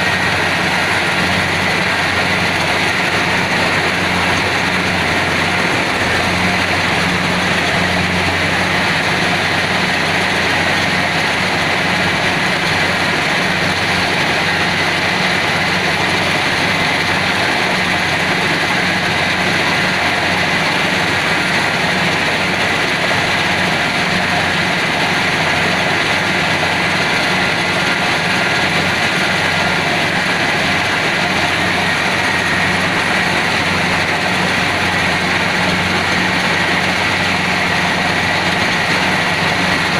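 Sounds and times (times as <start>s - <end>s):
combine harvester engine droning: 0.0s - 39.9s.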